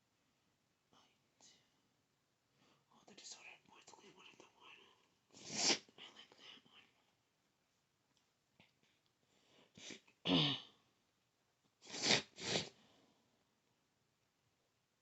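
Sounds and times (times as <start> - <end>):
person sneezing: 9.8 - 10.7, 11.8 - 12.7.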